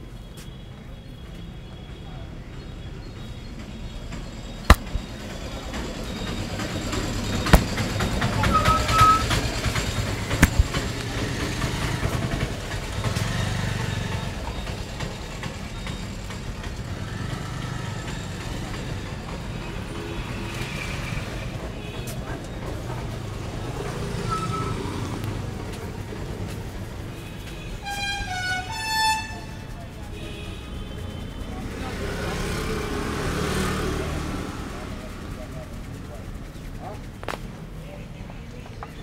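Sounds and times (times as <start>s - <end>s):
road traffic rumble: 0.0s - 39.0s
sharp clicks: 4.7s - 5.1s, 10.4s - 11.2s.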